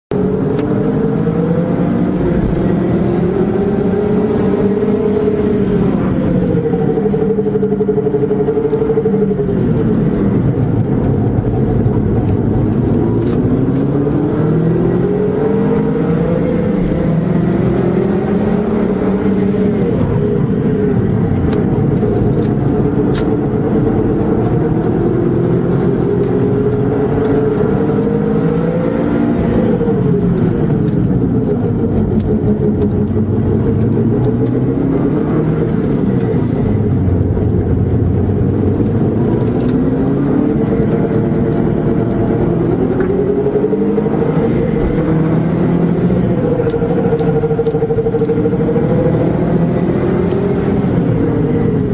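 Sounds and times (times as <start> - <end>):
car engine and exhaust burble: 0.0 - 51.9.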